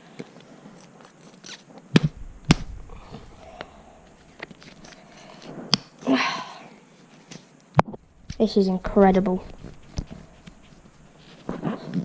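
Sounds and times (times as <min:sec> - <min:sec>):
faint rustling: 0:02.0 - 0:05.7, 0:08.0 - 0:12.0.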